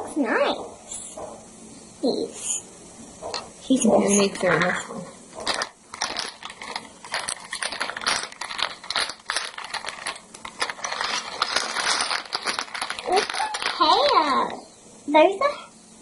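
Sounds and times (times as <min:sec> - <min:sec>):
plastic pieces clicking and rattling: 0:05.4 - 0:14.2.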